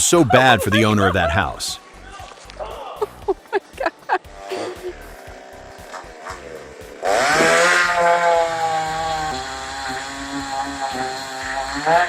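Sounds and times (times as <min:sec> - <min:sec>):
chainsaw engine revving: 0:04.2 - 0:12.0.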